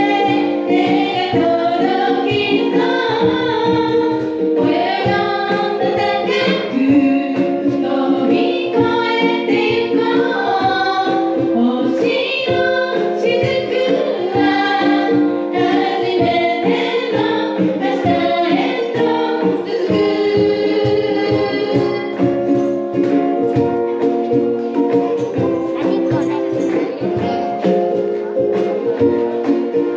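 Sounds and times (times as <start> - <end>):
women singing together: 0.0 - 23.6
strummed ukuleles: 0.0 - 29.9.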